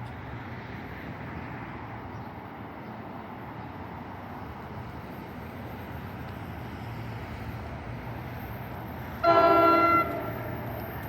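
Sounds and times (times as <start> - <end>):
train horn blast: 9.2 - 10.7.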